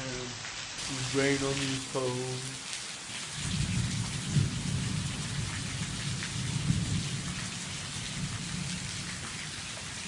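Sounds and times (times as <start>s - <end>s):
rain falling: 0.0s - 10.0s
thunder rumbling: 3.4s - 9.6s.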